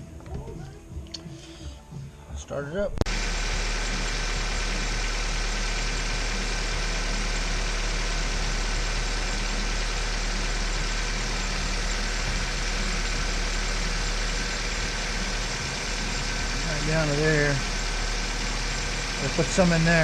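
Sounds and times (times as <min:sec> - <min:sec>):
car engine idling: 0:03.1 - 0:20.0.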